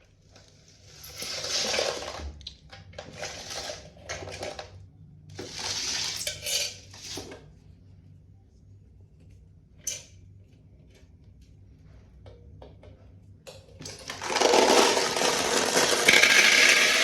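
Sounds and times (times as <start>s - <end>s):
marbles rattling down a track: 14.0s - 17.0s.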